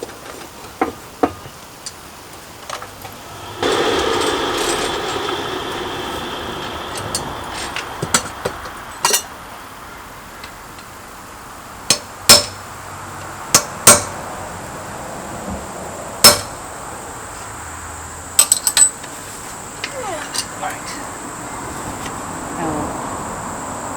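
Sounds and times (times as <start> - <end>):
rushing noise: 2.4 - 11.8
hammer striking metal on anvil: 11.9 - 12.6, 13.6 - 14.1, 16.2 - 16.5.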